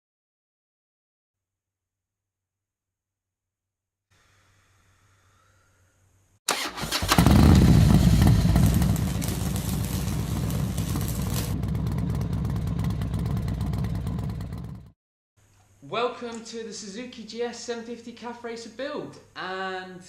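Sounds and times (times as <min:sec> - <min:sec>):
motorcycle engine starting and running: 0:06.5 - 0:15.0.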